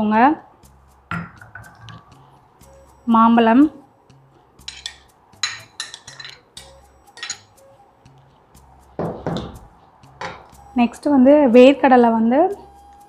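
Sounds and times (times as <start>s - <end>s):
utensils clinking on bowl: 4.6s - 7.6s.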